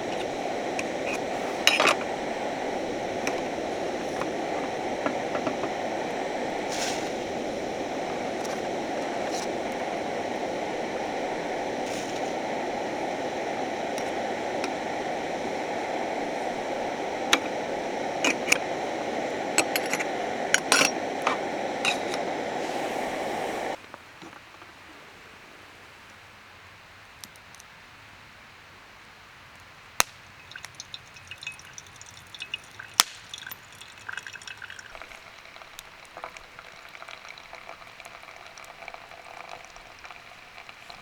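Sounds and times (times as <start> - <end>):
steady rushing noise: 0.0 - 23.8.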